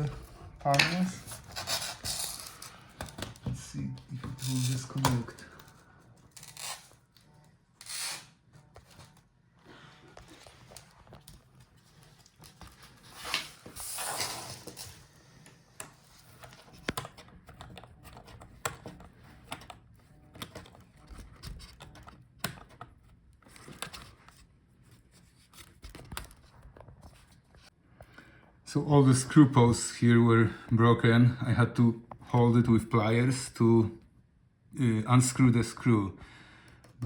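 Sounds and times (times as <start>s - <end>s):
plastic laptop parts clicking: 0.7s - 3.5s, 15.8s - 24.4s, 25.5s - 27.2s.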